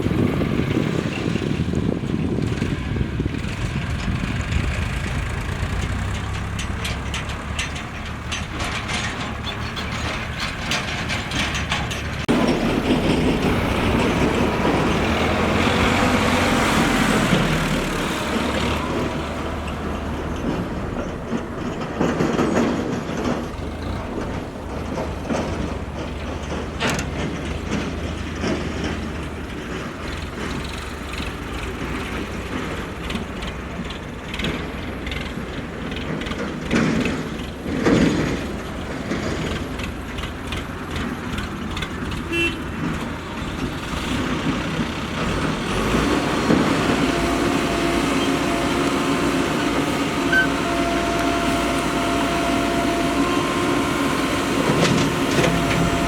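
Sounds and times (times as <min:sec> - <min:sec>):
backhoe diesel engine running: 0:00.0 - 0:56.0
metallic clatter and clanking: 0:00.1 - 0:50.7
loud rushing noise: 0:12.2 - 0:20.8, 0:45.4 - 0:56.0.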